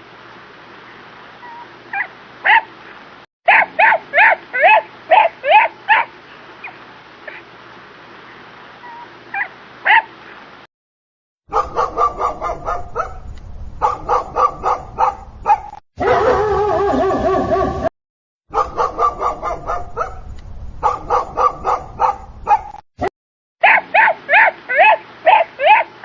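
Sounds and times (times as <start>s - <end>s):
dogs barking: 1.9s - 2.7s, 3.5s - 7.4s, 9.3s - 10.1s, 11.5s - 17.9s, 18.5s - 22.8s, 23.6s - 26.0s
dog wavering cry: 3.5s - 6.1s, 16.0s - 17.9s, 23.6s - 25.9s.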